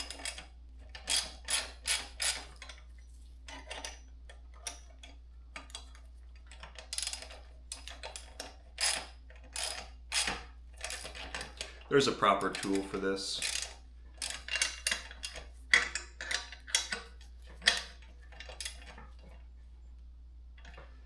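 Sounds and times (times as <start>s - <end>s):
metallic clicks and ticks: 3.5s - 19.1s.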